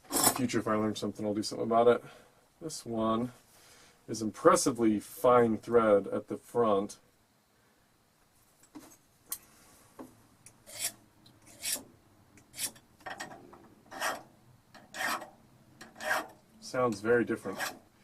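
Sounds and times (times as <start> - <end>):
abrasive rod rasping on steel: 10.6 - 13.3, 13.9 - 16.4, 17.4 - 17.9.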